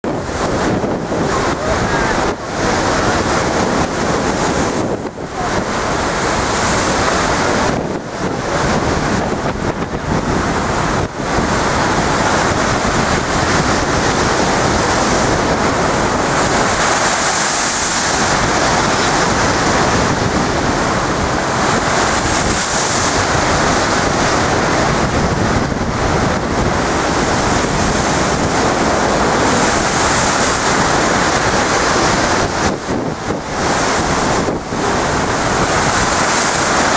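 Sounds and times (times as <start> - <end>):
storm waves breaking on sea wall: 0.0 - 36.9
wind buffeting microphone: 0.0 - 36.9.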